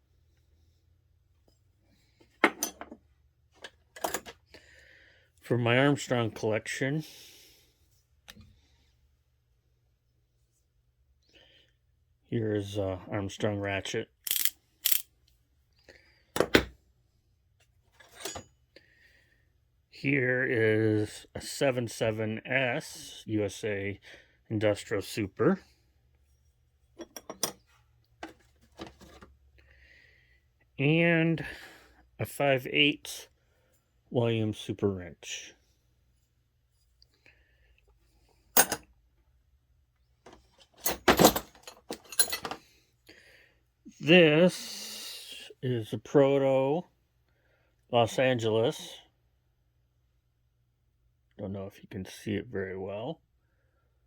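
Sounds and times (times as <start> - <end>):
metal tools clinking: 2.4 - 3.0, 14.3 - 15.0, 18.0 - 18.5, 27.0 - 27.6, 38.6 - 38.8, 40.8 - 42.6.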